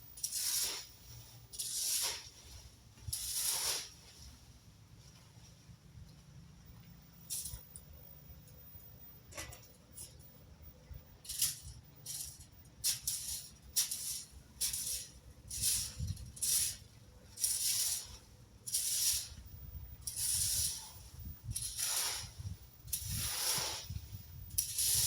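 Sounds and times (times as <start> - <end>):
rake scraping through dry leaves: 0.0 - 4.6, 11.3 - 25.0
wind rumble on microphone: 15.5 - 16.5, 19.2 - 25.0.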